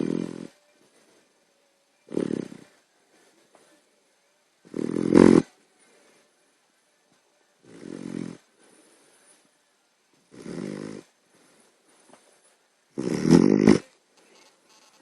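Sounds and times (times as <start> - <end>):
puppy snoring: 0.0 - 0.7, 2.0 - 2.8, 4.6 - 5.6, 7.6 - 8.6, 10.3 - 11.2, 12.9 - 14.0.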